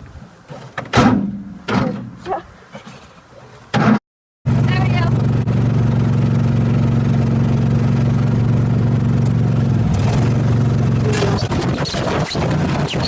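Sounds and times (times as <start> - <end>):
tractor engine running: 4.5 - 13.0.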